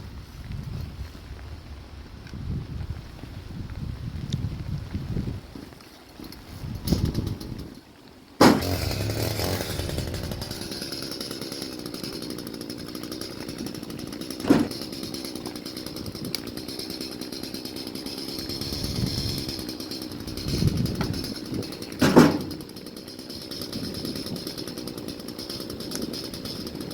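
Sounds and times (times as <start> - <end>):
chainsaw running: 6.1 - 26.9
sharp knock: 8.4 - 8.8.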